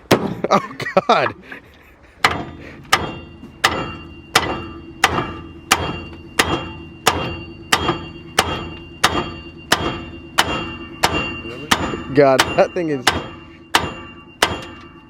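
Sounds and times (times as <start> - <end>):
hammer pounding on steel: 0.0 - 0.5, 2.2 - 15.0.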